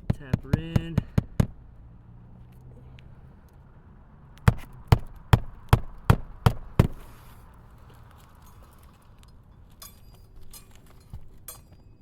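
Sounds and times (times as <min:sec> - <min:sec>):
hammer striking roofing nail: 0:00.0 - 0:01.6, 0:04.4 - 0:07.0.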